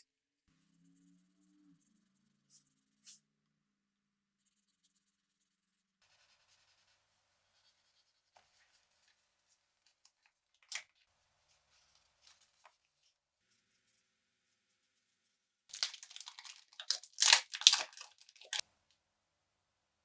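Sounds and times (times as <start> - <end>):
packaging scratching and rustling: 15.7 - 18.6.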